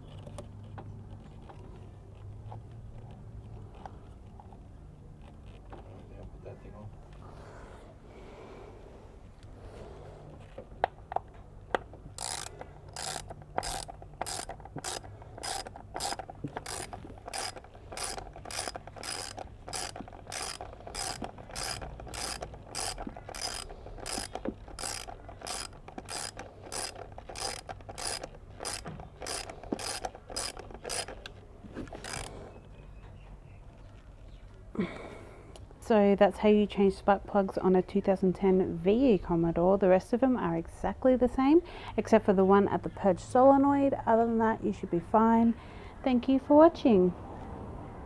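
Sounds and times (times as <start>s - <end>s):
ratchet wrench clicking: 12.2s - 31.3s, 32.0s - 32.3s.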